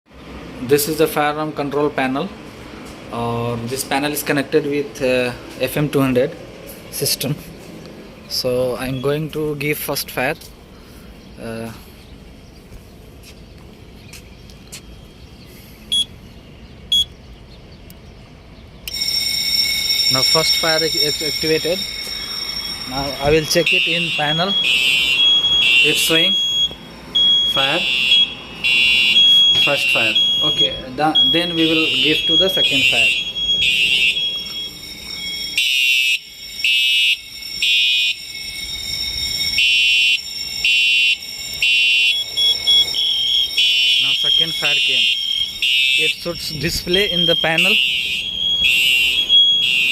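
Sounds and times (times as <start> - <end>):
fire alarm beeping: 8.3 - 10.0, 15.9 - 16.1, 16.9 - 17.2, 18.9 - 49.9
faint steady high tone: 18.9 - 24.6, 29.3 - 35.6.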